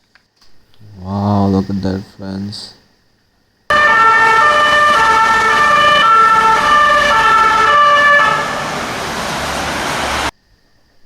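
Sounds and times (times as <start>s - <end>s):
toy siren: 3.7s - 8.7s.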